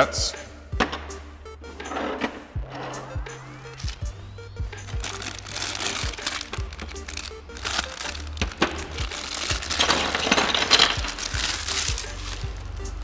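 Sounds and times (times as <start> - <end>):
background music with bass line: 0.0 - 13.0
plastic packaging crinkling: 3.7 - 4.1, 4.8 - 12.8.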